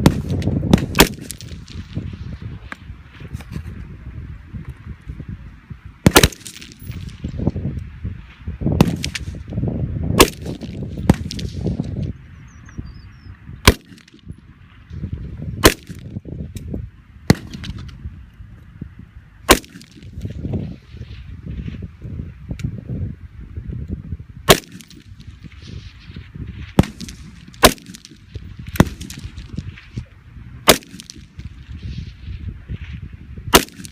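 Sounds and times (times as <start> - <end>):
rifle shots: 0.0 - 1.8, 6.0 - 7.1, 10.2 - 11.8, 13.6 - 14.3, 15.6 - 16.1, 17.3 - 17.8, 19.5 - 20.1, 24.5 - 25.2, 26.8 - 29.5, 30.6 - 31.4, 33.5 - 33.9.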